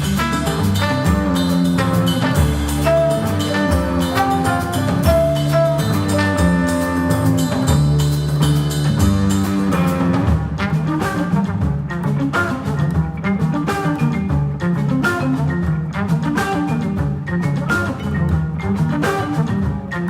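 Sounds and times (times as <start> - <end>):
vibraphone: 0.0 - 10.4
double bass: 0.0 - 20.0
drum kit: 0.0 - 20.0
trombone: 0.0 - 20.0.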